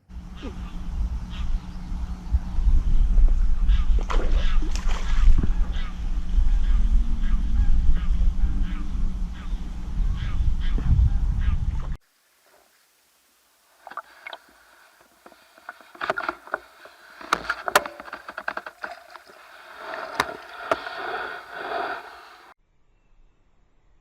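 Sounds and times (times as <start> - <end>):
water splashing and sloshing: 3.7 - 7.4, 12.0 - 22.5
sharp knocks and clicks: 15.2 - 19.2.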